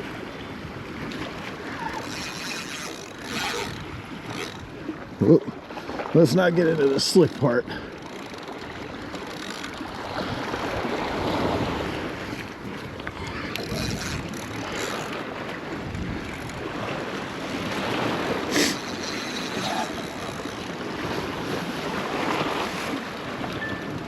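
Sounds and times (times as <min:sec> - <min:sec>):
surf washing in: 0:00.0 - 0:24.0
wind buffeting microphone: 0:00.5 - 0:05.3, 0:06.7 - 0:19.0.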